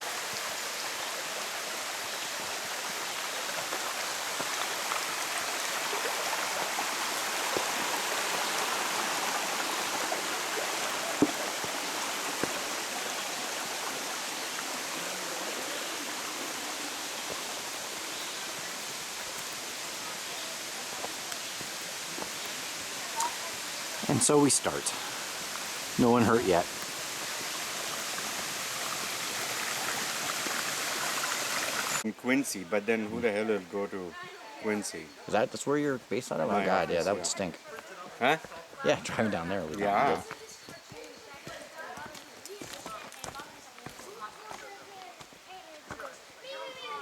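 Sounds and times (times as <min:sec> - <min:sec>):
mountain stream rushing: 0:00.0 - 0:32.4.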